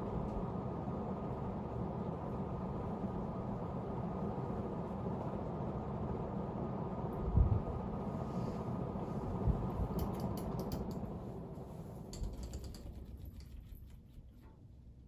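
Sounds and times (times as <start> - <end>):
ceiling fan motor hum: 0.0 - 15.0.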